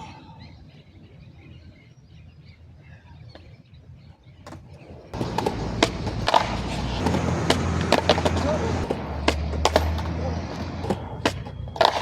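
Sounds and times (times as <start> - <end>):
skateboard wheels rolling on concrete: 0.0 - 12.0
skateboard clack: 4.4 - 12.0
low outdoor rumble: 4.8 - 12.0.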